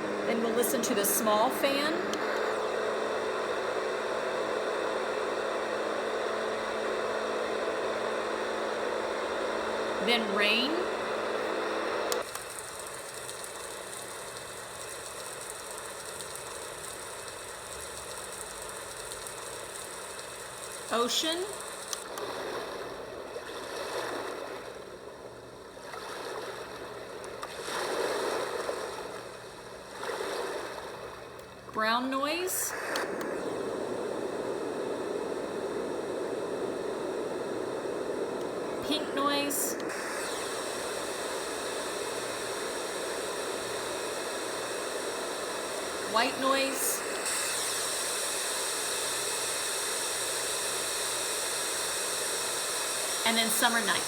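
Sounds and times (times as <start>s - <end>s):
ocean surf from small speaker: 0.0s - 12.1s, 20.9s - 24.7s, 30.0s - 47.7s, 52.9s - 54.0s
faint hum: 0.0s - 54.0s.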